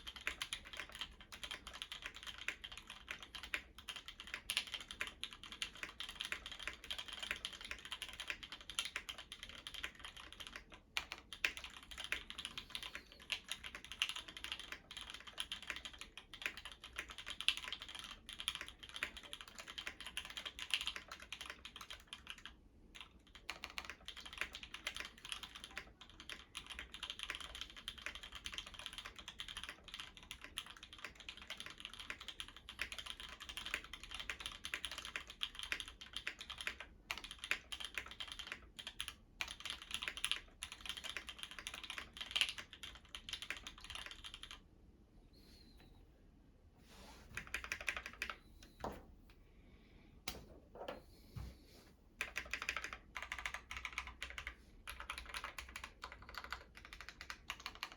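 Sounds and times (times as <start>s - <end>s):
typing on mechanical keyboard: 0.0s - 44.6s, 47.4s - 48.4s, 52.2s - 57.9s.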